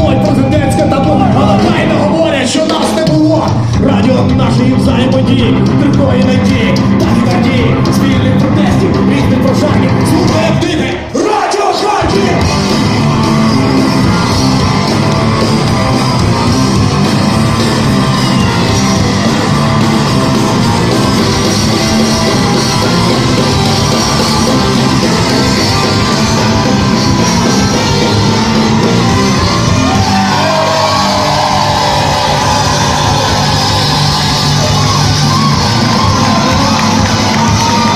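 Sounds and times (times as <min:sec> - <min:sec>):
rock band playing live: 0:00.0 - 0:11.2, 0:11.8 - 0:37.9
gliding lead guitar line: 0:12.4 - 0:37.9.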